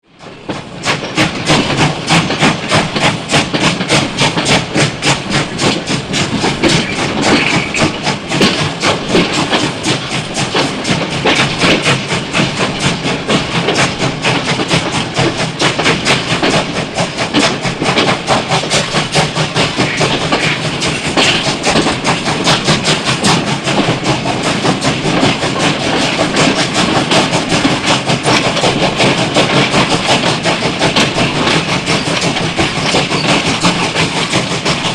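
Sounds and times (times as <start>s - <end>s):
steam locomotive chuffing: 0.0s - 34.9s.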